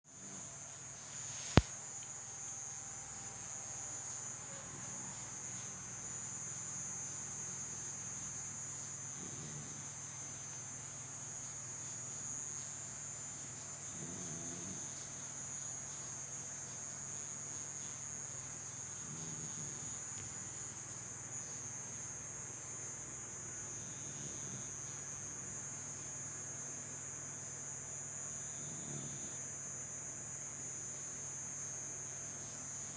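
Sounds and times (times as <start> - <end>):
insect chirring: 1.1 - 2.1
dog snoring: 9.1 - 10.0, 13.8 - 15.2, 18.8 - 20.2, 23.7 - 24.9, 28.4 - 29.6.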